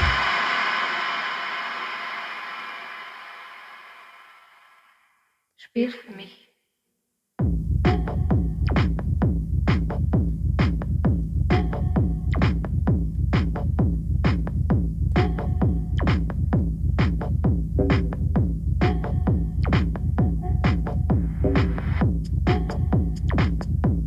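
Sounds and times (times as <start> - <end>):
heavy sustained bass line: 0.0 - 1.9
drum-machine beat: 7.4 - 24.0
techno music: 7.8 - 24.0.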